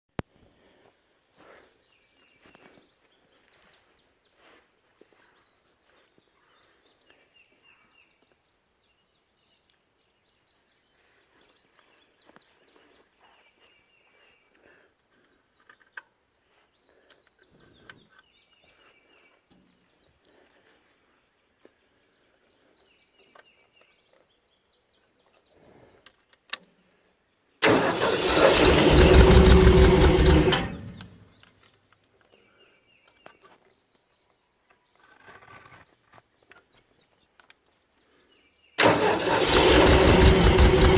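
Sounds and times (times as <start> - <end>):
air compressor engine running: 27.6 - 31.2, 38.8 - 40.9.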